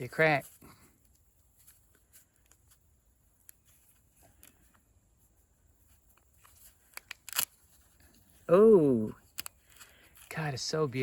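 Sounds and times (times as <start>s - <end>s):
faint handling: 0.3s - 10.5s
husk cracking: 6.1s - 8.2s.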